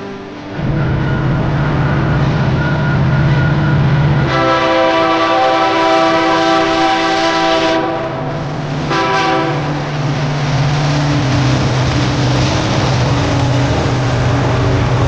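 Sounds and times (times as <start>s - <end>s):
loud multi-note horn: 0.0s - 10.1s
low engine hum: 9.7s - 15.0s.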